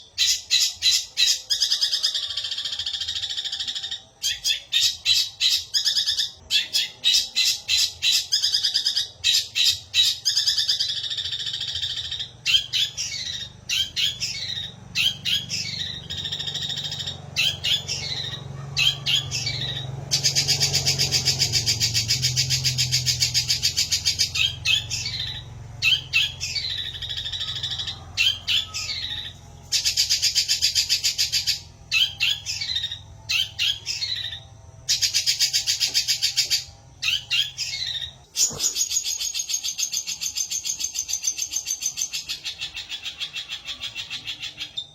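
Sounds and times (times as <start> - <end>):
bird singing varied song: 0.0 - 44.9.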